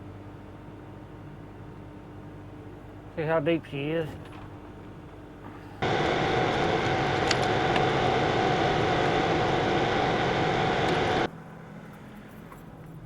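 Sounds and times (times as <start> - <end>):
faint steady whine: 0.0 - 13.0
excavator engine running: 4.3 - 11.5.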